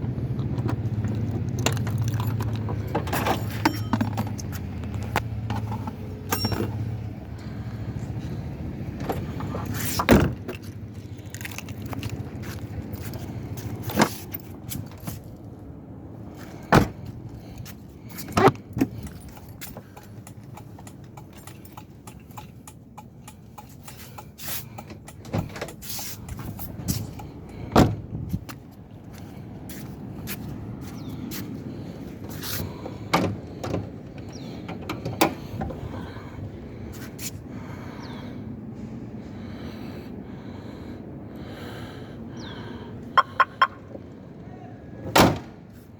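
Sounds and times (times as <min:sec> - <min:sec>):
car engine idling: 0:00.0 - 0:09.8.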